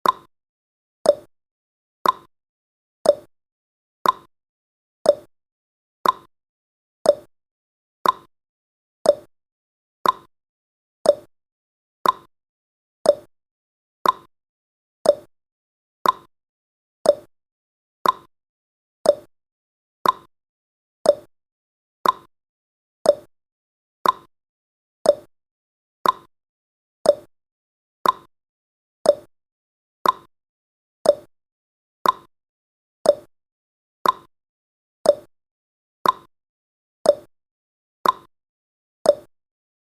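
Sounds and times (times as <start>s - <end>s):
clock ticking: 2.0s - 2.3s, 4.0s - 4.3s, 6.0s - 6.3s, 8.0s - 8.3s, 10.0s - 10.3s, 12.0s - 12.3s, 14.0s - 14.3s, 15.1s - 15.3s, 16.0s - 16.3s, 18.0s - 18.3s, 19.1s - 19.3s, 20.0s - 20.3s, 21.1s - 21.3s, 22.0s - 22.3s, 24.0s - 24.3s, 26.0s - 26.3s, 28.0s - 28.3s, 29.1s - 29.3s, 30.0s - 30.3s, 31.1s - 31.3s, 32.0s - 32.3s, 33.1s - 33.3s, 34.0s - 34.3s, 35.1s - 35.3s, 36.0s - 36.3s, 38.0s - 38.3s, 39.1s - 39.3s.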